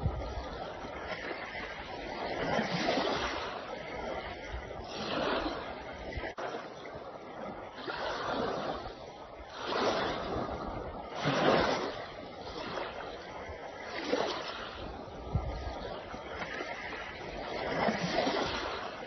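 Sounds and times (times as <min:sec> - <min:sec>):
waves washing in: 0:00.0 - 0:19.0.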